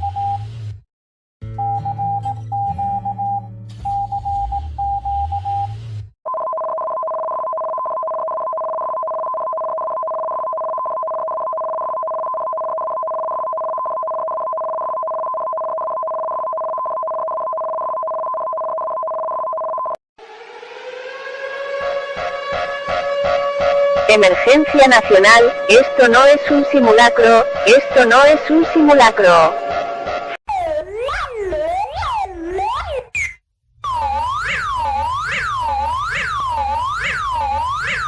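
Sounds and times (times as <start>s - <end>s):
two-tone electronic attention signal: 1.6s - 20.0s, 23.8s - 29.8s, 33.9s - 38.0s
low droning tones: 20.2s - 30.4s
rising alert tone: 20.2s - 38.0s
pulsed alert beeping: 21.6s - 38.0s.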